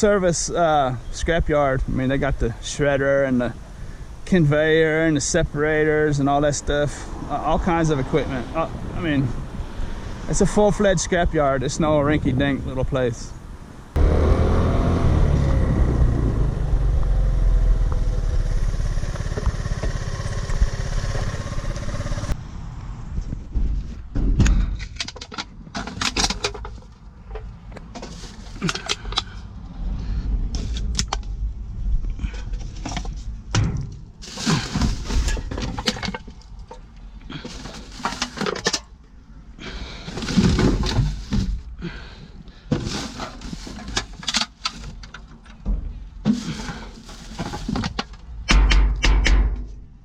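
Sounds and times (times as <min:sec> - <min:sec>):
vehicle engine rumbling: 0:00.5 - 0:50.0
hard objects clattering: 0:32.2 - 0:38.9, 0:40.0 - 0:41.6, 0:42.7 - 0:48.3.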